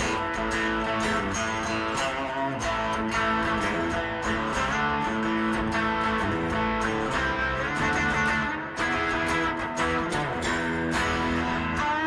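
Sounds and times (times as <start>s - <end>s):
electric guitar chords: 0.0s - 12.0s.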